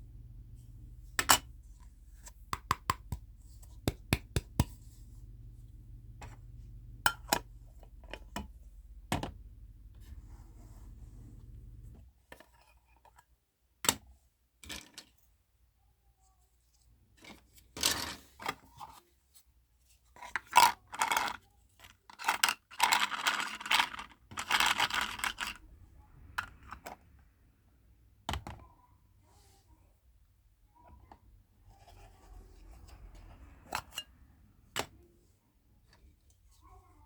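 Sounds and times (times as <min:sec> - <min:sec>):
small objects clicking and clattering: 0:20.2 - 0:25.6.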